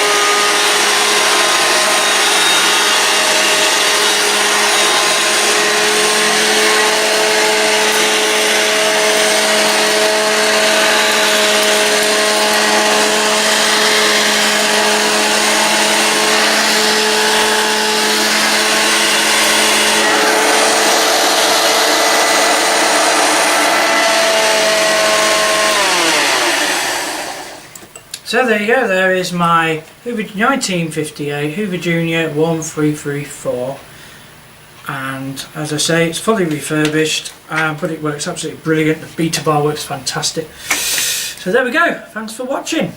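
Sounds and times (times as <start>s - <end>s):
vacuum cleaner running: 0.0s - 27.8s
vacuum motor winding down: 0.0s - 27.8s.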